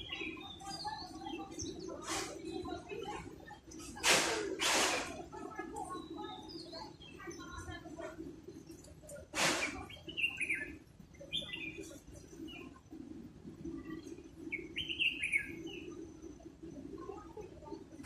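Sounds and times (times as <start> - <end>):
short loud hiss: 4.0 - 5.2, 9.4 - 9.8
bird chirping: 8.7 - 12.9, 13.8 - 16.3.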